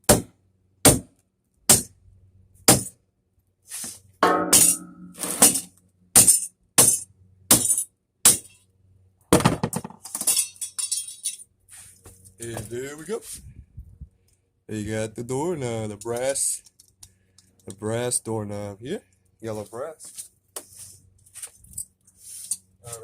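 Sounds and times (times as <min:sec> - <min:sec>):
metallic ring: 0:04.2 - 0:05.7
sharp metal strikes: 0:04.2 - 0:08.6
loose metal parts rattling: 0:09.8 - 0:11.4.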